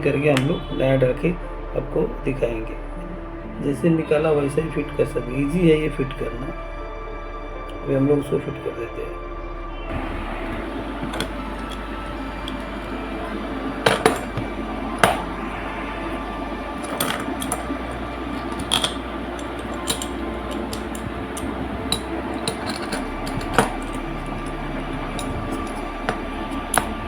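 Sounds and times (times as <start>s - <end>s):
small metal parts clinking: 16.8s - 27.0s.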